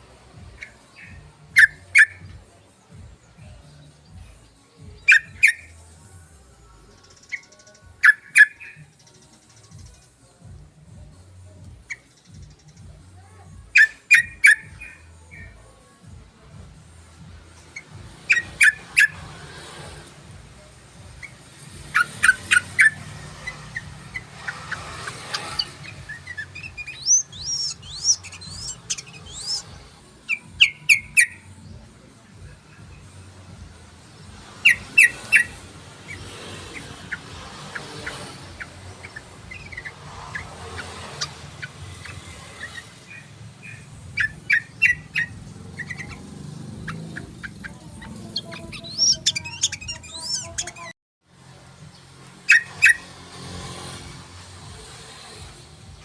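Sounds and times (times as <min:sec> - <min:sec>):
bird song with sharp notes: 0:00.0 - 0:51.0
high sliding bird notes: 0:21.1 - 0:31.6, 0:34.0 - 0:50.9.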